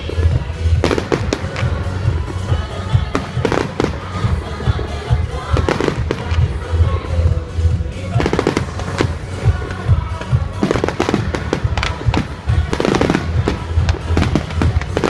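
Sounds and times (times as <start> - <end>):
firework booms and cracks: 0.0 - 4.8, 8.1 - 15.0
music playing: 0.0 - 15.0.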